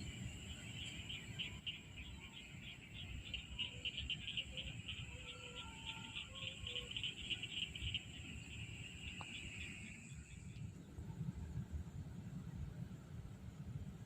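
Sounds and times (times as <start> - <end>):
insect chirping trill: 0.0 - 10.8.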